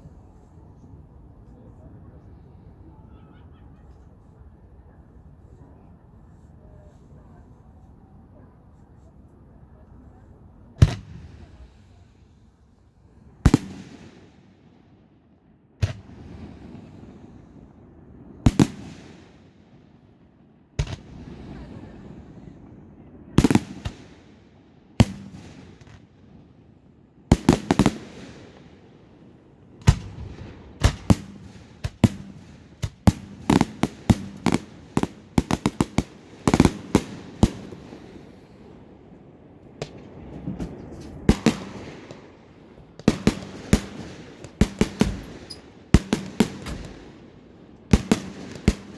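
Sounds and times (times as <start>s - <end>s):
fireworks bangs: 10.8s - 12.5s, 13.4s - 14.4s, 18.5s - 19.4s, 20.8s - 22.6s, 23.4s - 24.2s, 27.3s - 28.8s, 29.7s - 48.9s
hiss after firework bangs: 30.8s - 38.7s.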